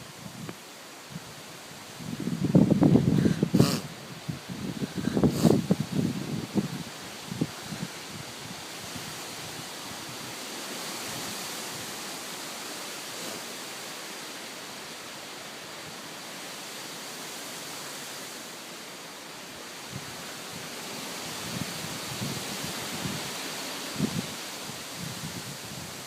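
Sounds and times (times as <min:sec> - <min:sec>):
wind buffeting microphone: 0:00.0 - 0:10.4, 0:19.9 - 0:26.0
wind rushing through trees: 0:00.0 - 0:26.0.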